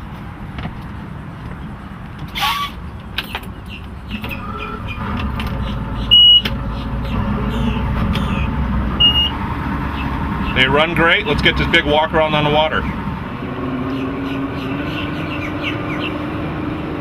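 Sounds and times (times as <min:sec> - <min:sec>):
outboard engines idling: 0:00.0 - 0:17.0
loud high beep: 0:06.1 - 0:06.5, 0:09.0 - 0:09.4.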